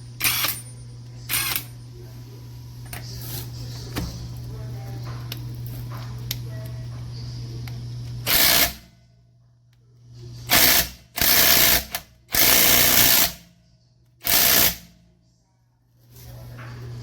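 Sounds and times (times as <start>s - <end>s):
impact wrench bursts: 0.2s - 0.6s, 1.3s - 1.7s, 8.2s - 8.9s, 10.5s - 13.4s, 14.2s - 14.9s.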